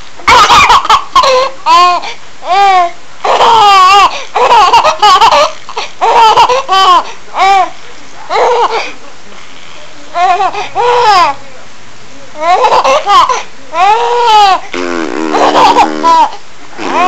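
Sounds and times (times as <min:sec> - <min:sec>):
baby laughing: 0:00.2 - 0:07.7, 0:08.3 - 0:08.9, 0:12.4 - 0:17.0.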